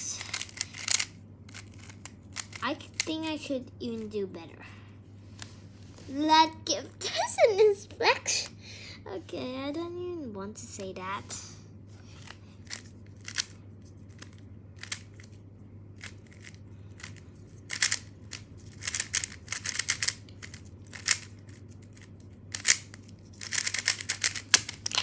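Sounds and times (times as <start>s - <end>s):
puzzle cube clicking and rattling: 0.2s - 3.2s, 12.2s - 15.4s, 16.0s - 25.0s.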